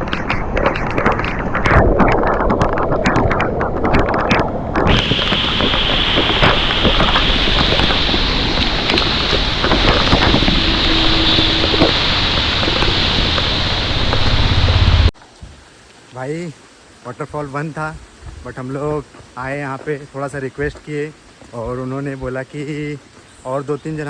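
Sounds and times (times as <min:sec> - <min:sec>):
wind rushing over microphone: 0:00.0 - 0:15.1
motorcycle running: 0:04.8 - 0:15.1
road noise: 0:04.8 - 0:15.1.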